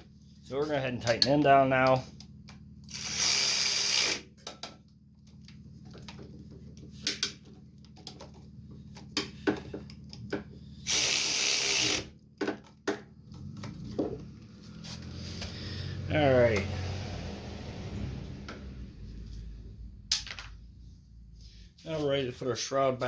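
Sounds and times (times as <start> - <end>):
ratchet wrench clicking: 2.9 - 4.3, 10.8 - 12.2.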